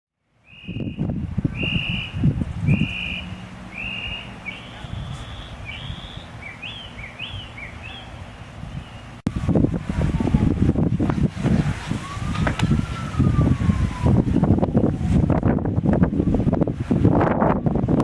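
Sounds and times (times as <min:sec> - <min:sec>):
bird singing whistled notes: 0:00.4 - 0:09.2
wind buffeting microphone: 0:00.4 - 0:18.0.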